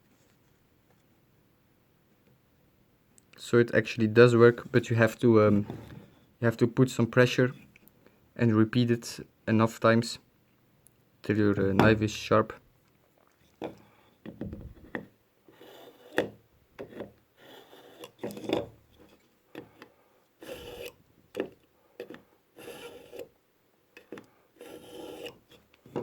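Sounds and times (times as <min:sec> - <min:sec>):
knife rasping through sharpener: 0:15.5 - 0:16.2, 0:17.4 - 0:19.2, 0:20.4 - 0:21.0, 0:22.6 - 0:23.3, 0:24.6 - 0:25.6.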